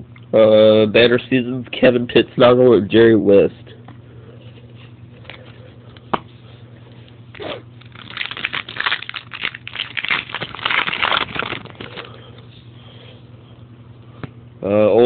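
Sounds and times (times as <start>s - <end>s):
wrapper crackling and tearing: 7.4s - 12.2s.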